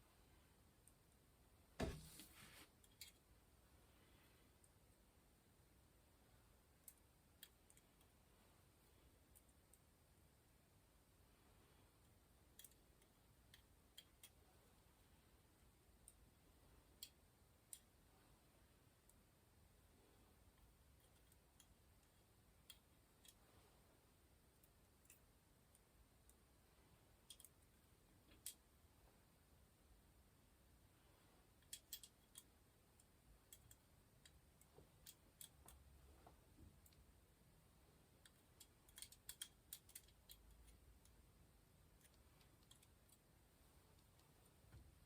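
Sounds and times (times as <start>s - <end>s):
faint sharp clicks of small parts: 0.2s - 5.1s, 6.6s - 10.0s, 11.3s - 29.2s, 31.0s - 37.2s, 37.8s - 45.0s
light clicks of metal parts: 6.8s - 8.2s, 12.0s - 14.5s, 27.2s - 28.7s, 31.5s - 37.1s, 38.2s - 41.3s, 41.9s - 45.0s.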